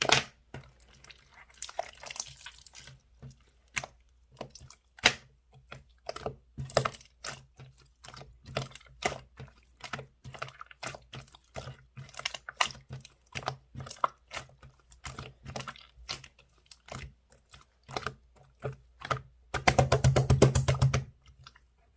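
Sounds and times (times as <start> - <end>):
slime clicking and popping: 19.1 - 21.1.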